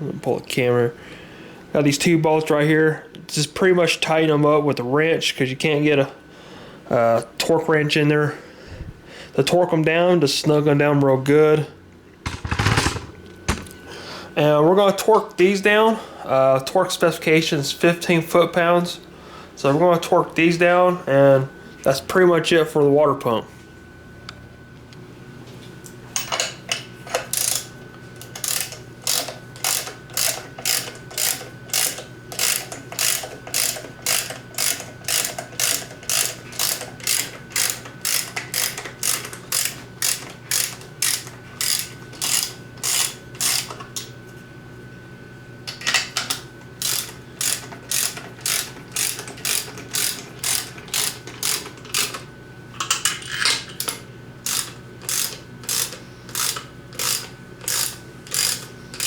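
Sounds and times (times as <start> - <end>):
ratchet wrench clicking: 27.4 - 27.7, 28.4 - 43.7, 46.8 - 52.2, 53.8 - 59.0.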